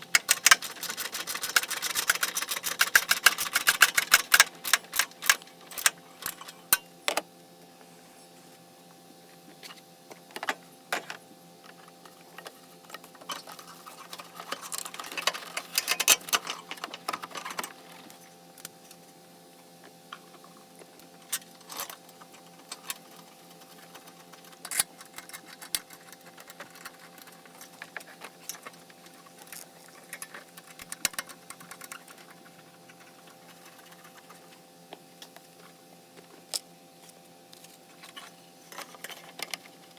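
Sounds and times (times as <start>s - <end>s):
faint steady hum: 0.0s - 39.9s
metal hand tools clicking: 0.2s - 6.5s.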